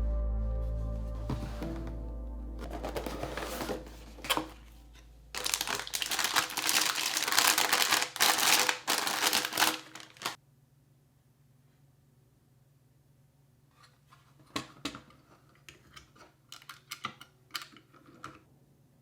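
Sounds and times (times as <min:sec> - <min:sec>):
packaging crinkling and rustling: 0:02.6 - 0:10.4.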